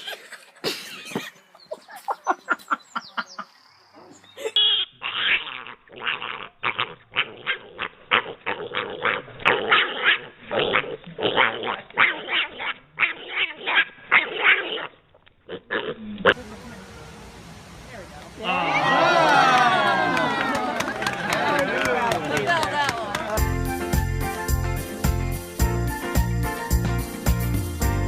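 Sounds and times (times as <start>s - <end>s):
dog barking: 9.0s - 10.8s.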